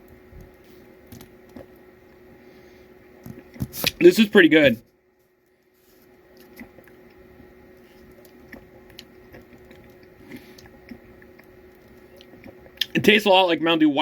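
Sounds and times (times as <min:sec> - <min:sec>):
steady low hum: 0:00.0 - 0:14.0
lip smacks and mouth clicks: 0:08.0 - 0:13.0.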